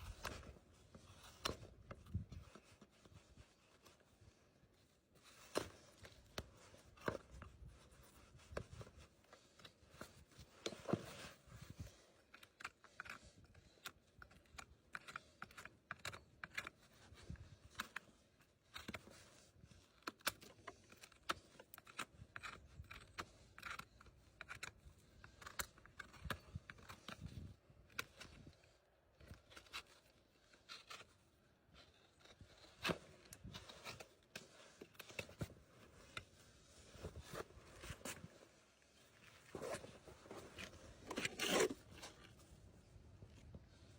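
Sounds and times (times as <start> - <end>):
hoof trimming clicks and scraping: 0.0 - 43.9.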